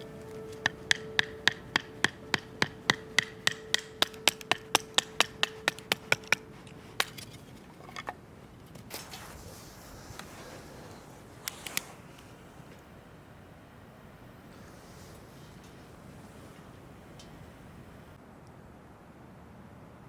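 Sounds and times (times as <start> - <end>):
sharp strikes: 0.0 - 7.2.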